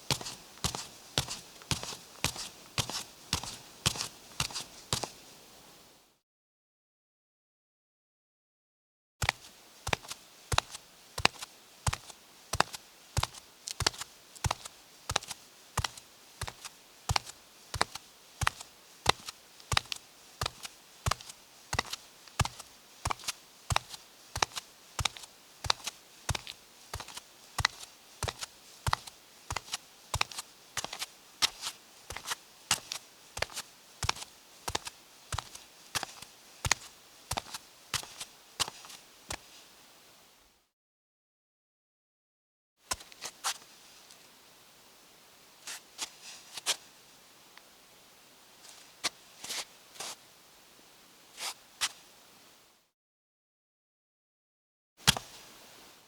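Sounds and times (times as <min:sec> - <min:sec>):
bare feet slapping on concrete: 0:09.2 - 0:38.1.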